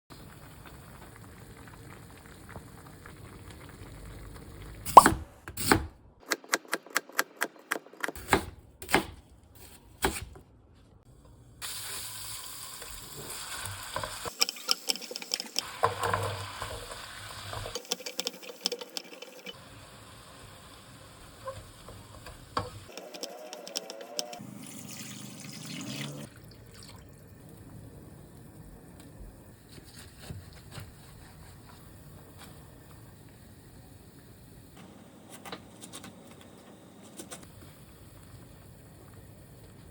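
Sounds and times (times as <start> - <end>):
food sizzling: 0.1 - 5.1, 11.6 - 26.3
stirring: 14.0 - 19.6, 21.4 - 24.4.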